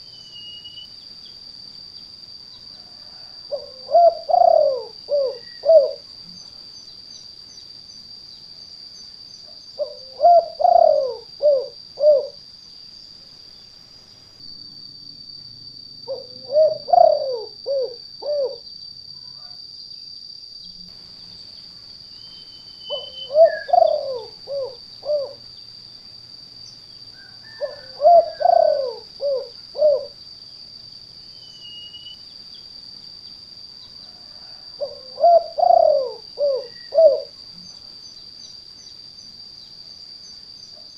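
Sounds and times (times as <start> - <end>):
steady high-pitched whine: 0.0 - 40.9
dove cooing: 2.9 - 6.1, 9.8 - 12.4, 16.1 - 18.6, 22.9 - 25.4, 27.4 - 30.2, 34.2 - 37.4.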